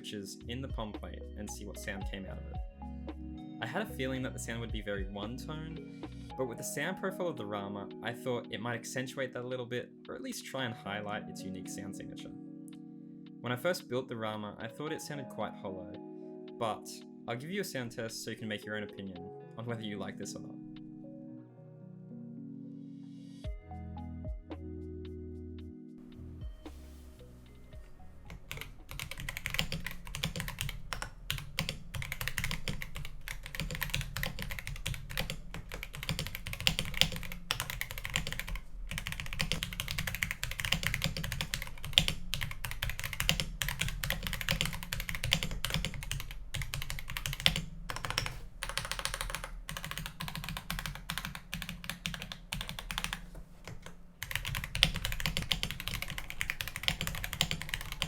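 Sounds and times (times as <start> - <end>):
mechanical keyboard typing: 28.3 - 58.0.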